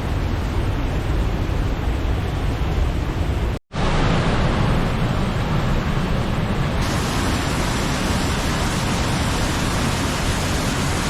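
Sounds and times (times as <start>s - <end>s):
waterfall rushing: 6.8s - 11.0s.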